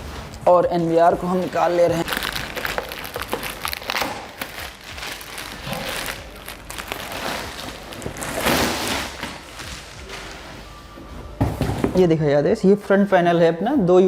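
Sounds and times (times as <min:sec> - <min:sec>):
packaging crinkling and rustling: 0:00.0 - 0:10.8.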